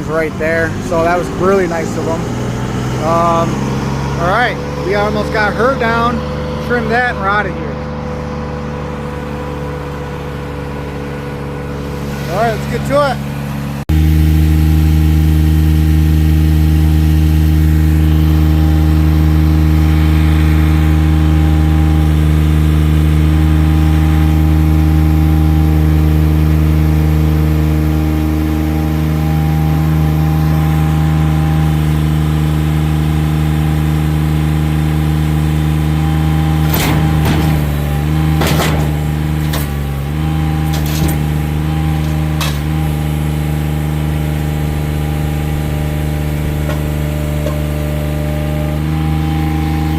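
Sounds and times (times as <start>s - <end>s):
machine engine running: 0.0s - 49.9s
sharp knocks and cracks: 36.7s - 39.8s.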